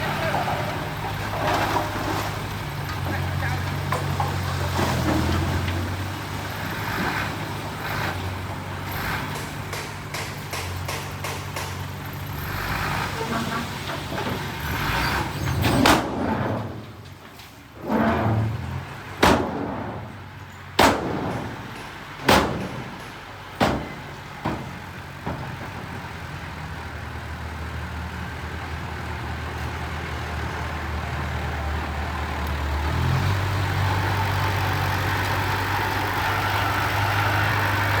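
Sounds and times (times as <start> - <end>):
low diesel engine drone: 0.0 - 15.6
loud machinery bangs: 19.2 - 26.0.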